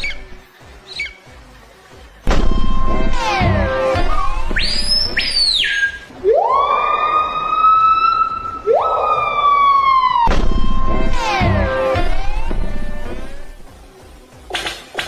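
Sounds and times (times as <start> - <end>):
high whistle rising and falling: 2.4 - 3.3, 3.9 - 13.5
siren-like wails: 2.4 - 13.6.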